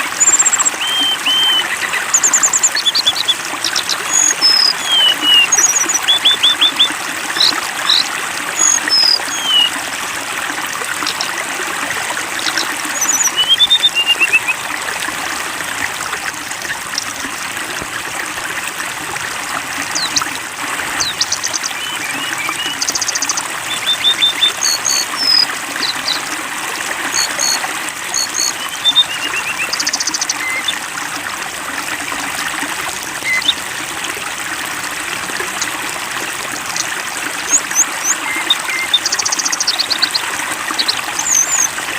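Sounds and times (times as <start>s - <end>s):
water trickling and splashing: 0.0s - 41.9s
songbirds chirping and trilling: 0.2s - 9.8s, 20.9s - 26.2s.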